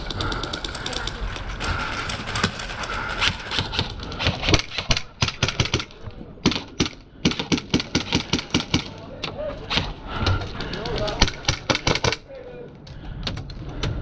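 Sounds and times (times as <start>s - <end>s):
airsoft guns firing: 1.9s - 9.1s, 11.0s - 12.2s.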